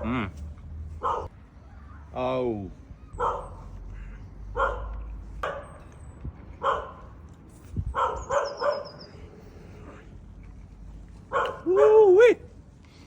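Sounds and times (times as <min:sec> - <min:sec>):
dog barking: 0:01.0 - 0:01.3, 0:03.2 - 0:03.7, 0:04.6 - 0:05.8, 0:06.6 - 0:07.1, 0:07.9 - 0:09.1, 0:11.3 - 0:12.0.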